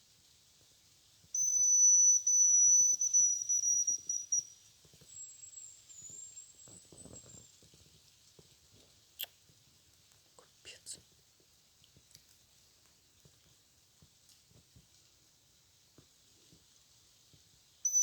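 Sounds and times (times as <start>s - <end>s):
high thin bird whistle: 1.3s - 4.6s.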